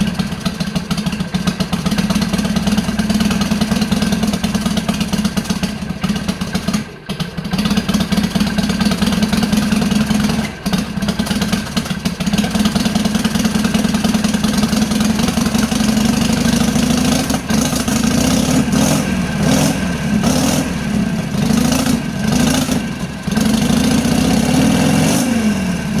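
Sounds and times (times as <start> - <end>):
motorcycle engine idling: 0.0 - 26.0
motorcycle engine revving: 0.0 - 26.0.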